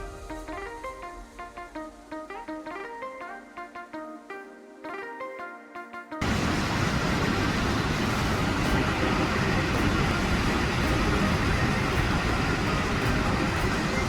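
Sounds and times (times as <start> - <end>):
large waterfall rushing: 6.2 - 14.0.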